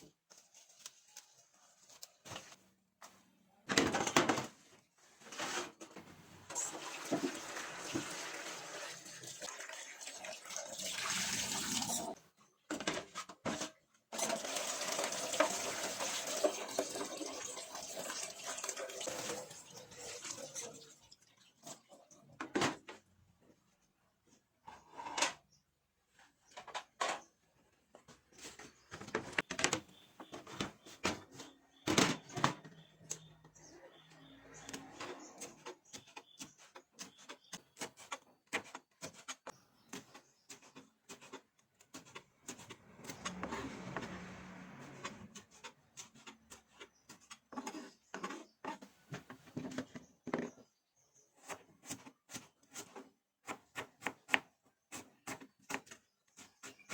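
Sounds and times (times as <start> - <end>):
utensils and bowls clattering: 14.1 - 21.0.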